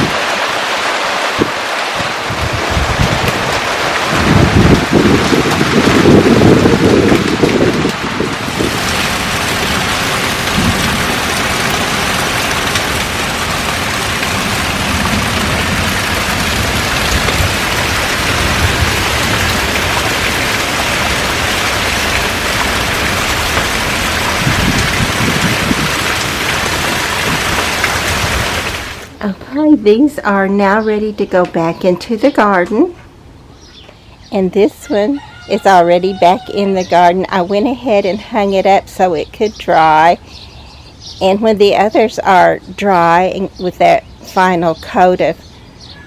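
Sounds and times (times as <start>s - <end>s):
steady rain falling: 0.0s - 29.3s.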